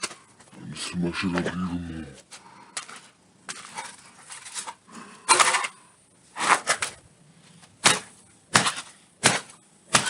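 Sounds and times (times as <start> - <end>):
sledgehammer smashing tablet: 7.8 - 10.0.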